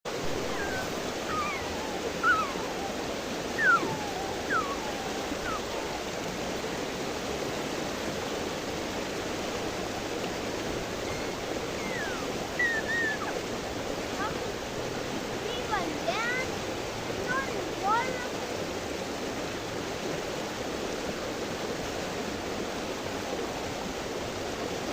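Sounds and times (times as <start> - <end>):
short downward-sliding calls: 0.1 - 6.4, 10.5 - 16.5
river water rushing: 0.1 - 24.9.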